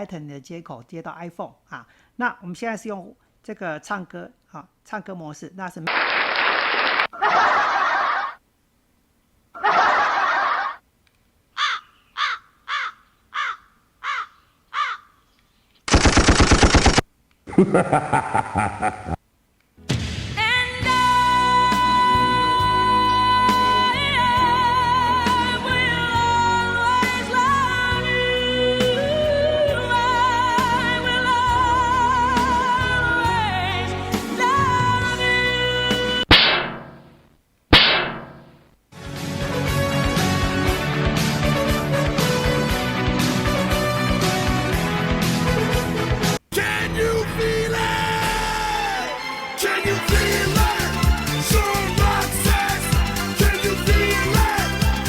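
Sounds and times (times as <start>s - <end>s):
short noise bursts: 5.9s - 7.1s, 15.9s - 17.1s
crow caws: 11.6s - 15.2s
pop backing track with beat: 49.6s - 55.0s.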